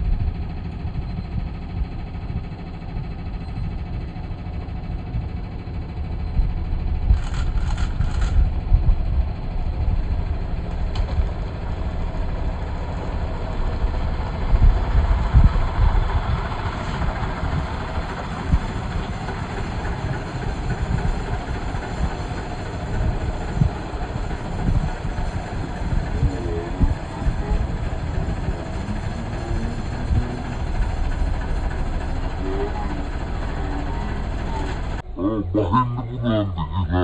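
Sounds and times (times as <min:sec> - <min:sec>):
vehicle engine rumbling: 0:00.0 - 0:37.0.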